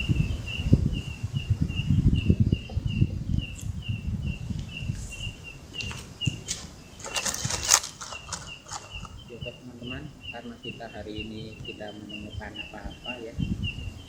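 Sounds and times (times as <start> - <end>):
night animal chirping: 0.0 - 14.0
rustling crackle: 5.8 - 9.3.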